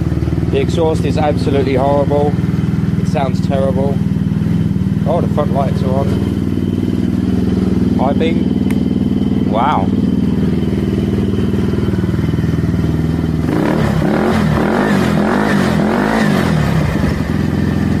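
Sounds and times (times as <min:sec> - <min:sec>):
moped engine idling and revving: 0:00.0 - 0:18.0.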